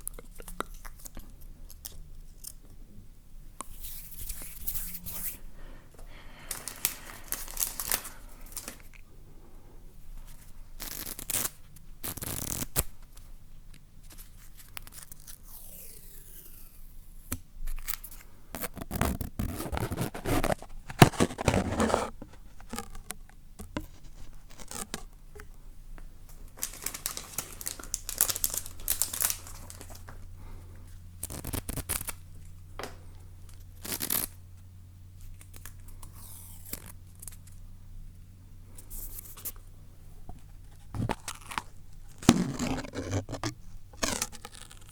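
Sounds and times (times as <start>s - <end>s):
material tearing and crinkling: 6.5s - 8.9s, 10.8s - 13.0s, 17.7s - 23.2s, 23.8s - 25.2s, 26.6s - 30.2s, 31.2s - 32.2s, 33.5s - 34.4s, 40.6s - 44.9s.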